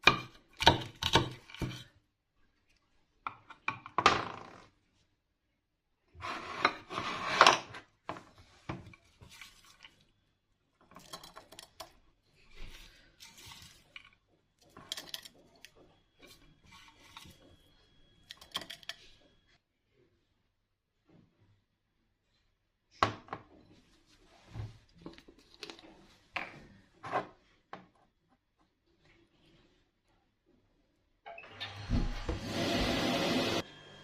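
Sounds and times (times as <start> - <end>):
rubbing and scraping garlic: 6.2 - 10.2, 10.8 - 19.2.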